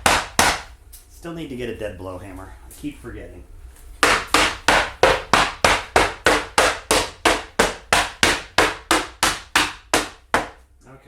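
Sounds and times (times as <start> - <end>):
hammer blows: 4.0 - 10.6.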